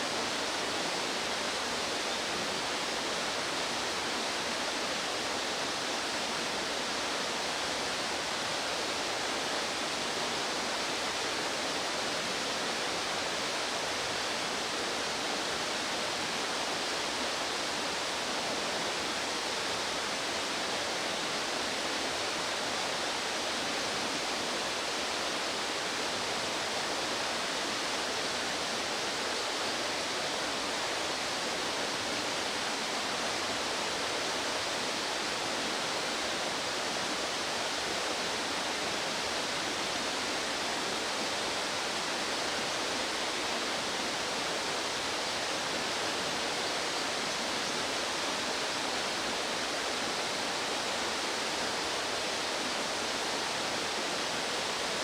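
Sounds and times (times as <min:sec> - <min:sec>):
rushing stream water: 0:00.0 - 0:55.0.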